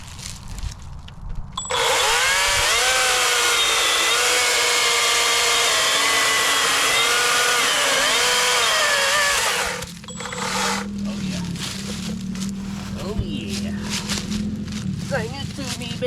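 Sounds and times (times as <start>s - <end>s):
battery chainsaw cutting log: 1.6s - 11.1s.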